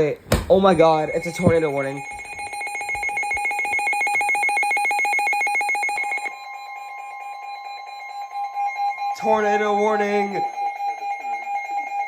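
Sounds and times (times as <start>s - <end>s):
steady alert tone: 0.6s - 6.3s
weather radio alarm beeping: 0.6s - 12.0s.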